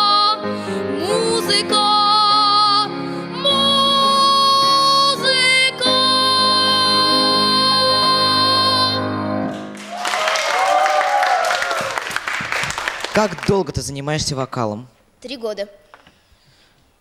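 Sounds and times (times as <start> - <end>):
boy singing: 0.0 - 9.0
people clapping: 9.5 - 14.0.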